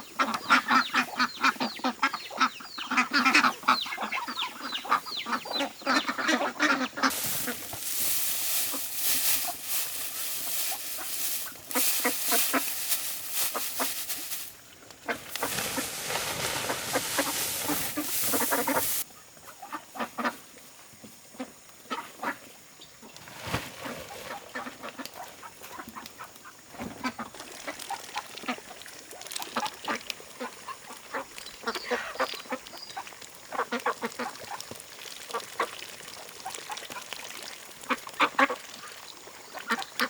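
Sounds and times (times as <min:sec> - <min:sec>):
ducks quacking: 0:00.2 - 0:09.9, 0:10.5 - 0:14.4, 0:16.7 - 0:20.4.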